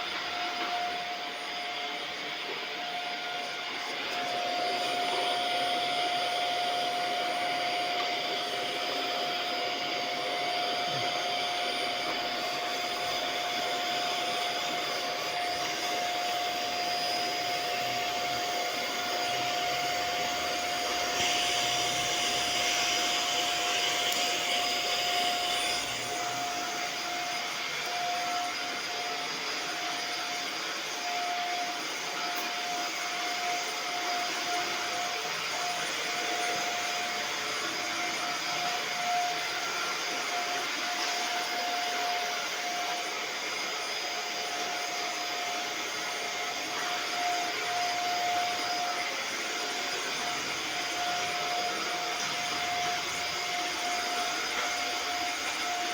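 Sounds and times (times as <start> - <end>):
vacuum cleaner running: 0.0 - 55.9.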